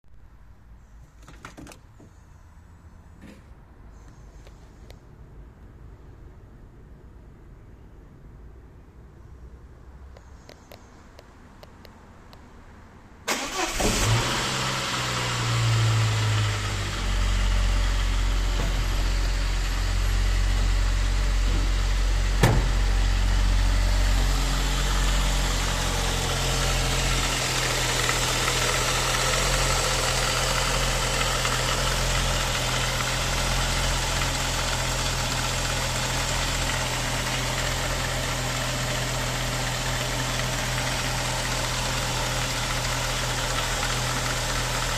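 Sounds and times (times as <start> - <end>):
engine starting and idling: 13.3 - 19.9, 21.0 - 44.9.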